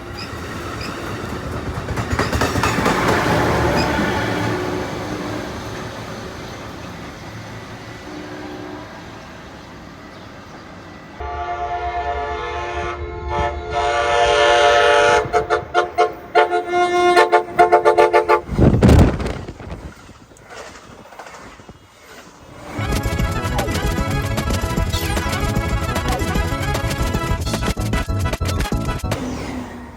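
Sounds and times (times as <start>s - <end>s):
train rumble: 0.0s - 29.9s
train horn blasts and toots: 3.0s - 6.0s, 8.0s - 9.6s, 11.2s - 18.6s.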